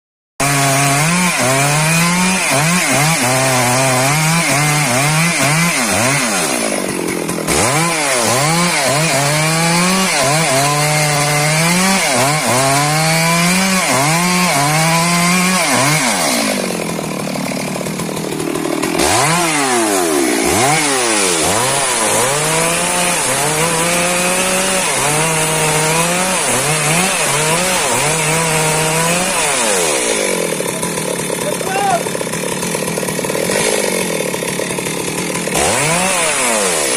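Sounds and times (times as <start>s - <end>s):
chainsaw cutting wood: 0.4s - 36.9s.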